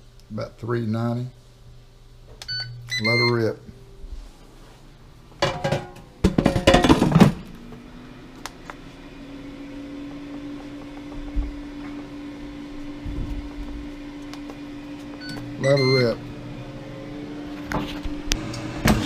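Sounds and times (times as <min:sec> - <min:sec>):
air fryer fan humming: 0:00.0 - 0:19.0
air fryer basket clattering: 0:05.4 - 0:07.5.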